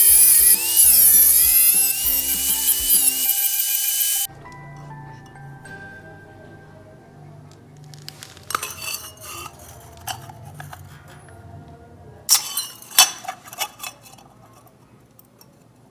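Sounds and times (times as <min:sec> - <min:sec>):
steel pipes clinking and scraping: 0:00.0 - 0:04.3, 0:08.0 - 0:11.3, 0:12.3 - 0:15.8.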